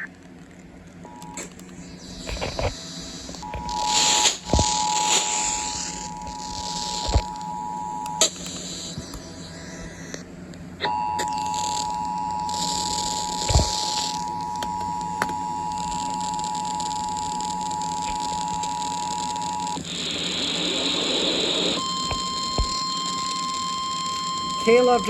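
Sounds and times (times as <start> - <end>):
high steady tone: 1.1 - 10.2.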